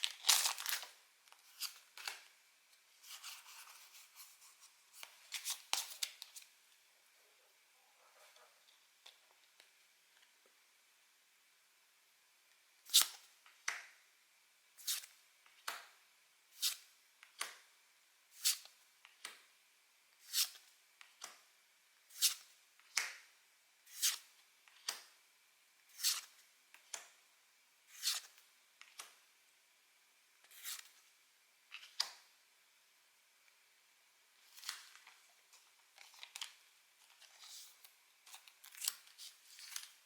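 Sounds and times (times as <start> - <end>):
cards sliding with a swish: 14.8 - 15.1, 16.6 - 16.8, 18.4 - 18.7, 20.2 - 20.6, 22.1 - 22.5, 23.9 - 24.3, 25.9 - 26.3, 27.9 - 28.4, 30.5 - 31.0.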